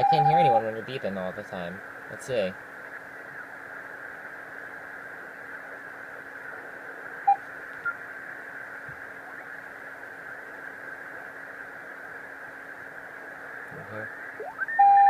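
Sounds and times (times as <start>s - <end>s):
faint low hum: 0.0s - 15.0s
radio receiver hiss: 0.0s - 15.0s.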